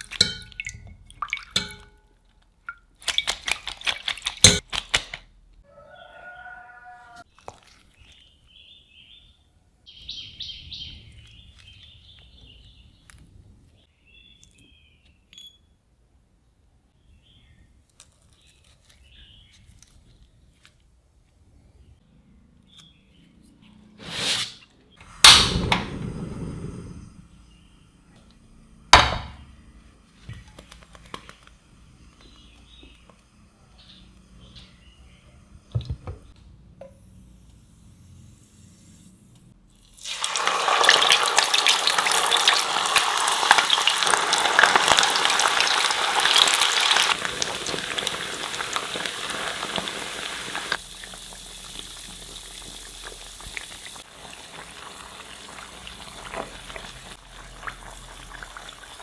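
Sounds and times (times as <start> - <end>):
food sizzling in hot oil: 39.9 - 59.0.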